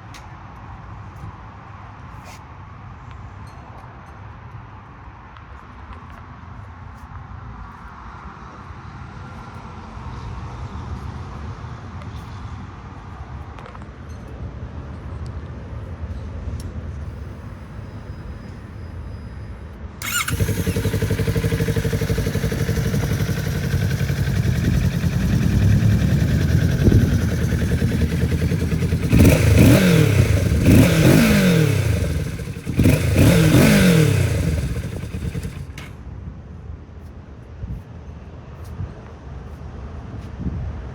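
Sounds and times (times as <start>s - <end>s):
motorcycle engine revving: 20.0s - 35.9s
motorcycle engine starting and idling: 20.0s - 36.0s.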